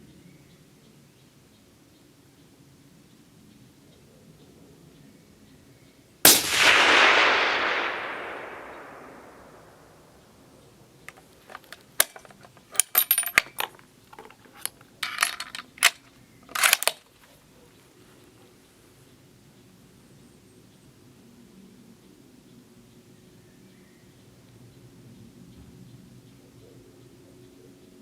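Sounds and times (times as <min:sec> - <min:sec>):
suppressed rifle shot: 0:06.3 - 0:10.3
rifle bolt clicks and rattles: 0:11.1 - 0:17.4.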